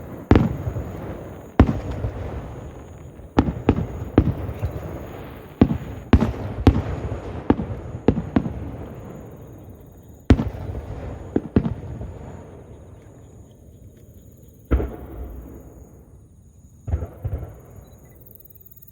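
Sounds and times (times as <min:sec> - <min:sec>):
firework shells bursting: 0:00.0 - 0:13.2.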